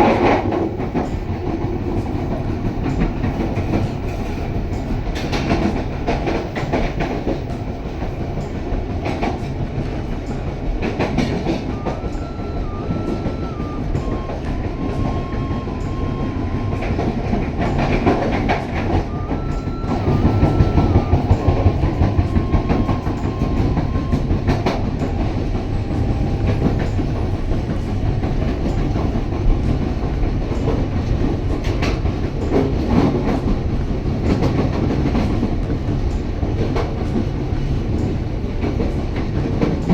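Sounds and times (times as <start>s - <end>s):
train rumbling: 0.0s - 39.9s
wheels clacking over rail joints: 0.0s - 39.9s
faint stepped high tune: 11.3s - 29.4s.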